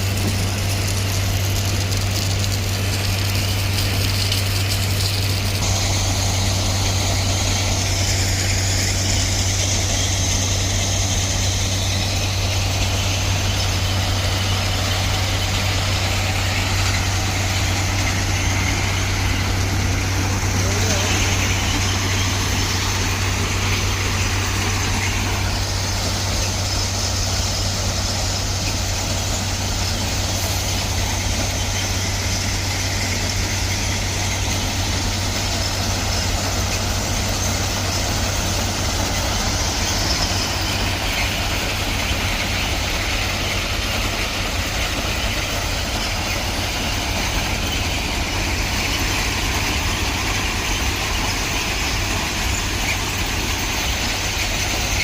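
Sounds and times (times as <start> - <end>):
heavy engine idling: 0.0 - 55.0.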